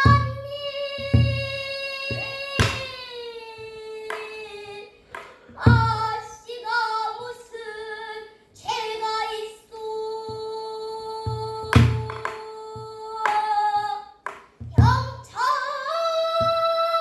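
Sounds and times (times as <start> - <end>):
barrel drum strokes: 0.0 - 3.0
child singing: 0.0 - 17.0.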